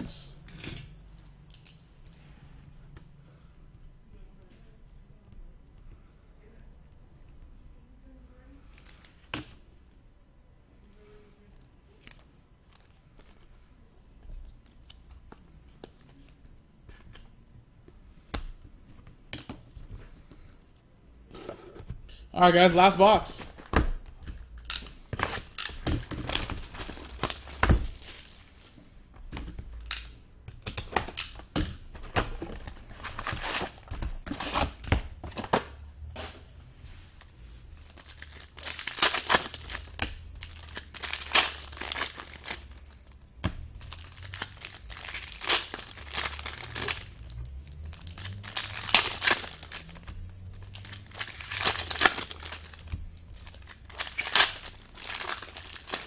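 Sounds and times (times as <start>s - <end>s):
plastic wrapping crinkling and tearing: 25.2s - 28.6s, 37.8s - 56.0s.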